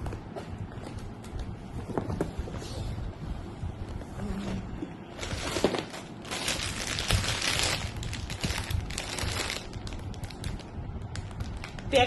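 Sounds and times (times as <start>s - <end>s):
plastic packaging rustling: 5.2s - 12.0s.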